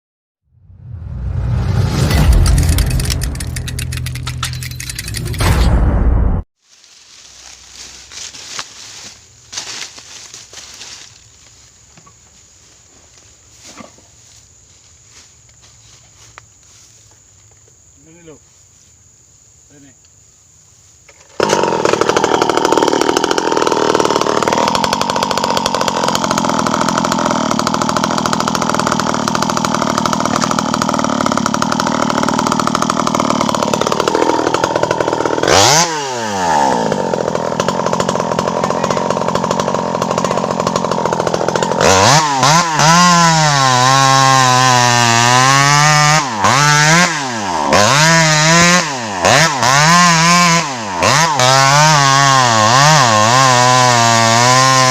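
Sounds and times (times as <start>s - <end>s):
chainsaw running at high revs: 21.3s - 54.9s.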